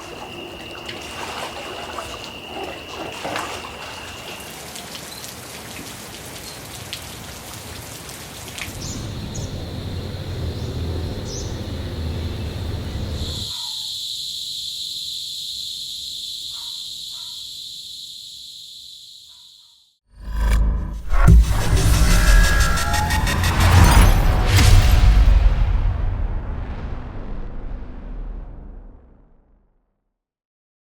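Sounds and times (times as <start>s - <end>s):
rain hiss: 0.0s - 13.5s
low rumble: 8.7s - 13.4s, 20.2s - 29.6s
high-pitched buzz: 20.2s - 25.0s.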